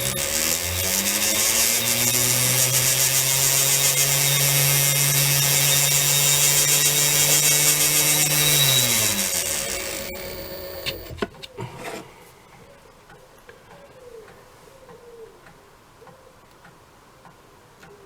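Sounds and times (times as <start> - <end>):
lathe motor running: 0.0 - 11.3
stone rubbing on wire: 0.0 - 12.1.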